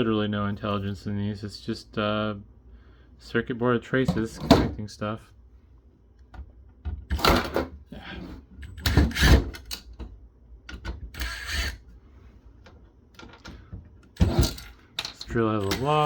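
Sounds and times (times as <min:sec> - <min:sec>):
cordless drill driving screws: 0:11.2 - 0:11.8
loose parts clicking and rattling: 0:12.6 - 0:16.0.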